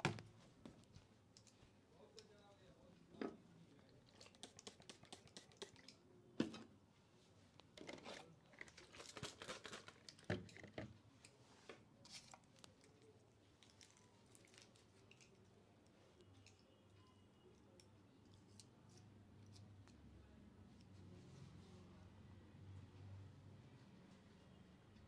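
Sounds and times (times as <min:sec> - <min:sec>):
hands rubbing through hair: 0:04.3 - 0:05.7.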